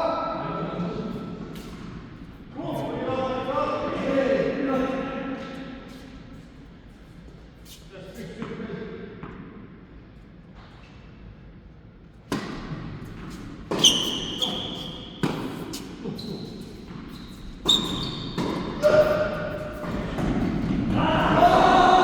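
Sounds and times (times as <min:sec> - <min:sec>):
tennis ball hits: 0:15.2 - 0:15.8.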